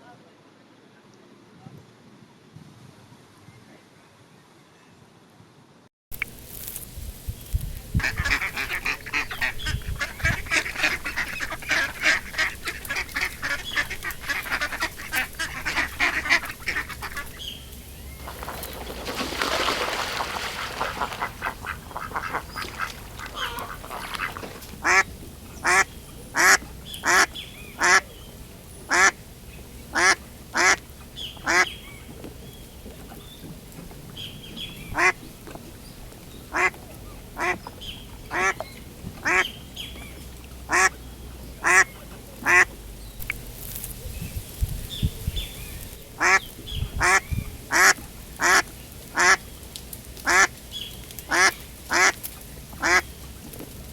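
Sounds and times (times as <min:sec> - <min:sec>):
duck quacking: 0:08.0 - 0:17.4, 0:20.4 - 0:28.1, 0:28.9 - 0:29.2, 0:29.9 - 0:30.8, 0:36.5 - 0:36.7, 0:37.4 - 0:37.6, 0:38.3 - 0:38.6, 0:39.2 - 0:39.5, 0:40.7 - 0:41.0, 0:41.6 - 0:42.7, 0:46.2 - 0:49.4, 0:50.2 - 0:50.5, 0:51.3 - 0:52.2, 0:52.8 - 0:53.0.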